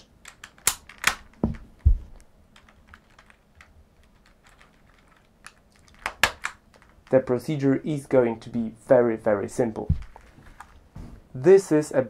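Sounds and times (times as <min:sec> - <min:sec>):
keycaps clicking: 0:00.0 - 0:07.2.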